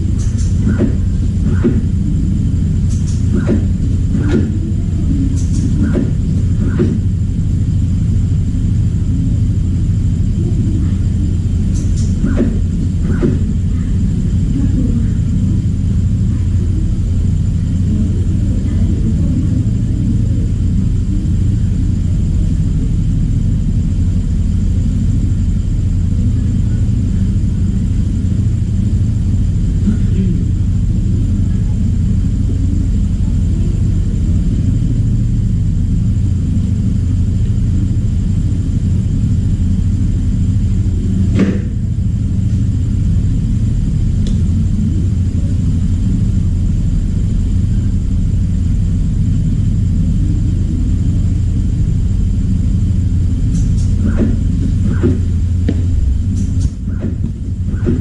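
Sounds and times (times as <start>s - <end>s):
faint high whine: 0.0s - 58.0s
steady low hum: 0.0s - 58.0s
sharp click: 0.2s - 1.0s, 2.9s - 3.6s, 5.3s - 6.1s, 11.7s - 12.5s.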